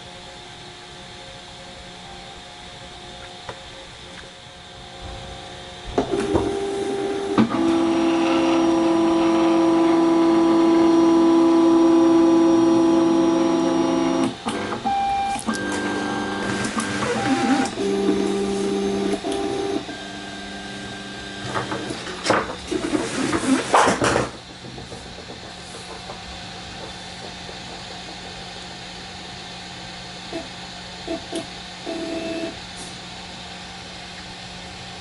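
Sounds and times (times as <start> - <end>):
fan hiss: 0.0 - 10.9, 14.2 - 35.0
stepper motors whining: 6.0 - 29.1.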